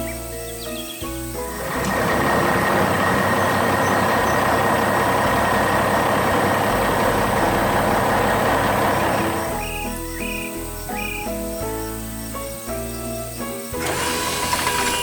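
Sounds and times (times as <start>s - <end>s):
heavy vehicle engine rumbling: 1.3s - 9.8s, 13.8s - 15.0s.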